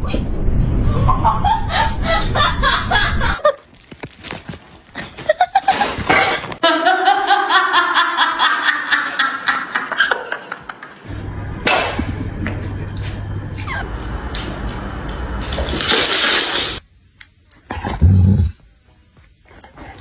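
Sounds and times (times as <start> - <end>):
person laughing: 0.9 - 3.7, 5.0 - 11.1.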